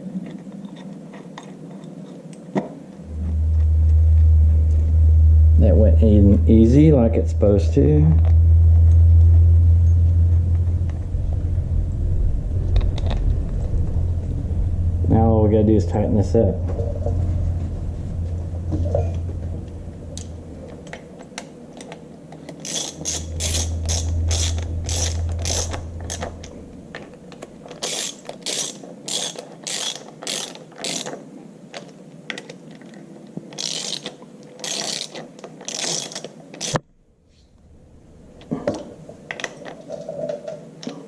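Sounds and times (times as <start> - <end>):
low steady hum: 0.0 - 33.0, 35.7 - 40.9
ratchet wrench clicking: 22.6 - 26.3, 27.8 - 31.1, 33.6 - 36.8.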